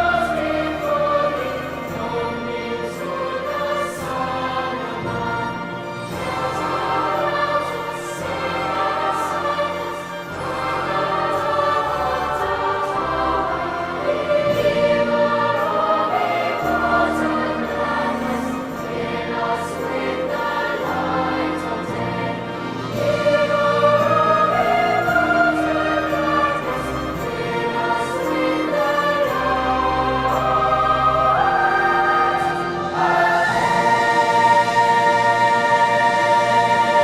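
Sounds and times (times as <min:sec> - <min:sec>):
choir singing sustained chords: 0:00.0 - 0:37.0.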